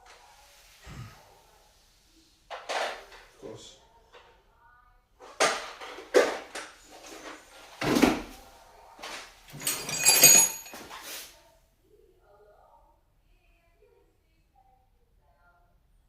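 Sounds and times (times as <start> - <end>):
metallic clinking of sockets: 9.5 - 10.8
hand tools knocking and clattering: 9.5 - 10.9.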